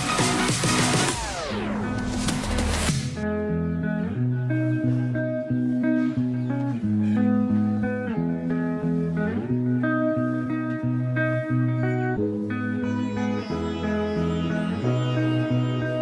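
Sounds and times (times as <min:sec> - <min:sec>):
bass line: 0:00.0 - 0:05.2
plucked guitar melody: 0:03.2 - 0:16.0.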